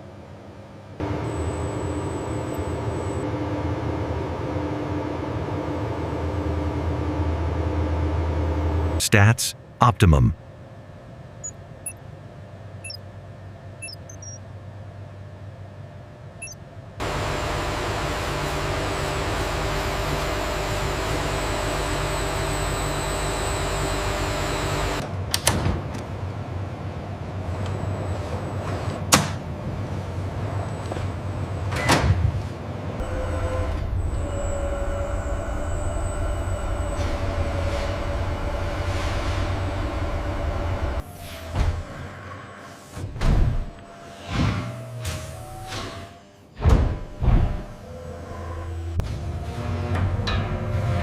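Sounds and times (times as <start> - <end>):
faint machine whine: 1.0 - 8.2, 10.0 - 25.0, 33.0 - 42.9
factory machinery humming: 1.0 - 25.0, 32.7 - 51.0
low machine hum: 33.0 - 41.2.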